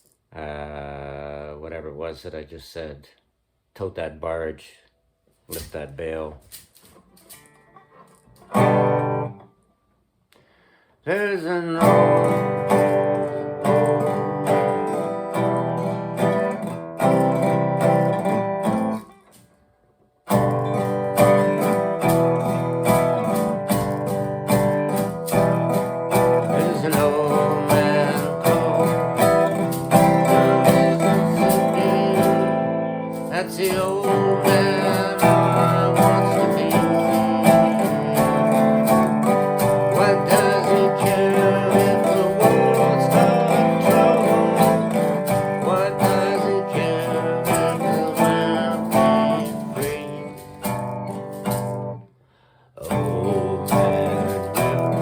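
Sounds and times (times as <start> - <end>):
guitar music: 5.5 - 9.7, 11.1 - 19.6, 20.2 - 55.0.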